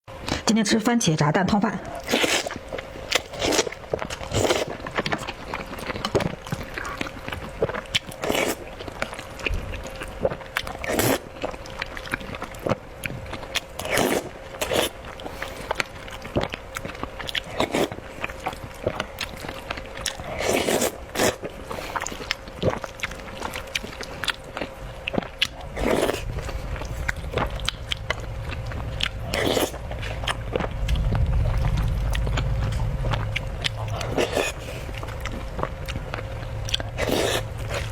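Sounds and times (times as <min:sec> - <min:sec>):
chewing and wet mouth sounds: 0:01.6 - 0:37.9
low rumble: 0:24.8 - 0:37.9.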